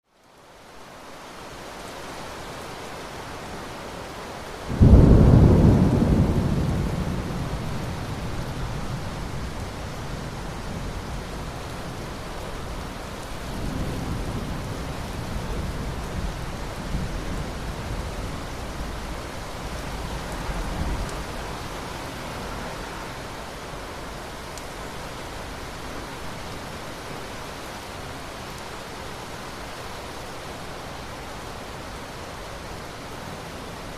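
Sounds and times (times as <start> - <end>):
steady rain: 0.0 - 33.9
thunder rumbling: 4.7 - 21.4.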